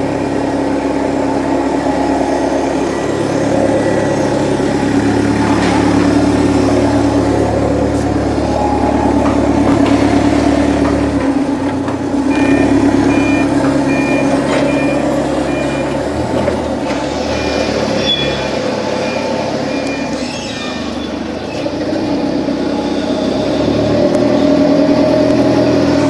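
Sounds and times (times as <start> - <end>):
engine running: 0.0 - 26.0
forklift reverse alarm beeping: 6.2 - 21.3.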